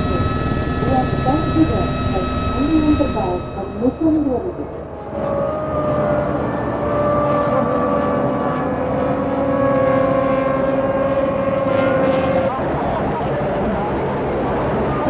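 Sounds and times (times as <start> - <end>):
racing car engine at high revs: 4.8 - 12.7.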